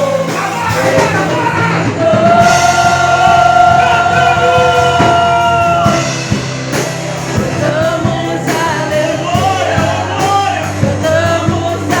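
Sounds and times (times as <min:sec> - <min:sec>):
person singing: 0:00.0 - 0:06.4, 0:07.2 - 0:12.0
drum hits: 0:00.0 - 0:12.0
held bass notes: 0:00.0 - 0:12.0.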